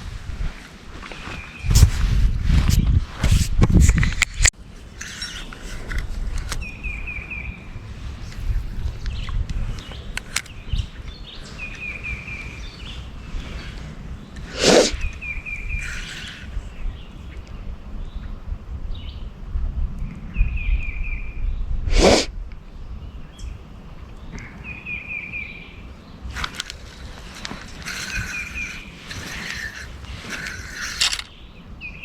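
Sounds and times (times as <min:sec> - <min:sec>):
wind rumble on microphone: 0:00.0 - 0:32.0
loud whooshes: 0:14.5 - 0:15.0, 0:21.9 - 0:22.3.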